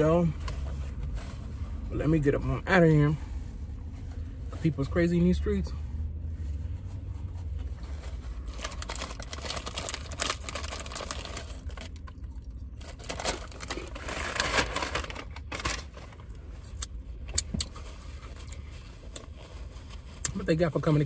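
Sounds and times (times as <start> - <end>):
food wrapper crumpling: 8.5 - 15.9.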